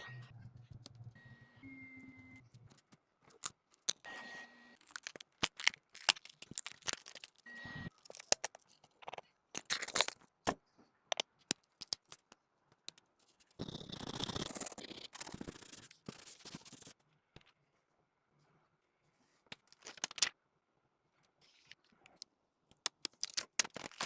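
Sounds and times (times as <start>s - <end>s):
brief steady tone: 1.2s - 2.5s, 7.5s - 7.9s.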